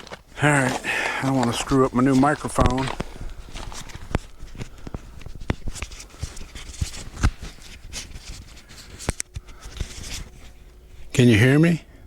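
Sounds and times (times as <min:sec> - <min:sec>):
microphone rustling on clothing: 0:00.0 - 0:11.1
clicks and knocks against microphone: 0:02.4 - 0:10.3.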